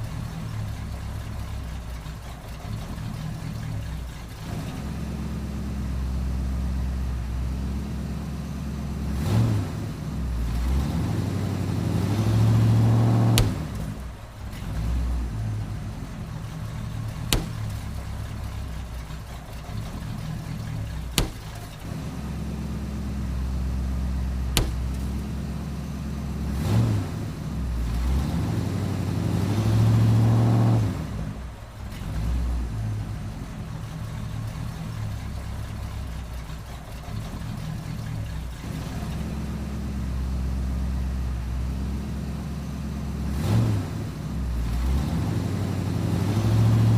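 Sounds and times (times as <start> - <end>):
car engine revving: 0.0 - 46.9
balloons bursting: 13.3 - 14.1, 17.1 - 18.1, 21.0 - 21.9, 24.4 - 25.4.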